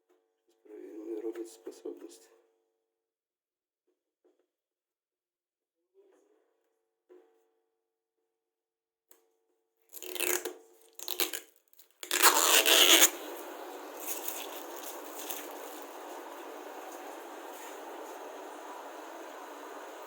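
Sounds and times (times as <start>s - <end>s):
washing machine noise bursts: 12.6s - 20.0s
water running into machine: 13.1s - 20.0s.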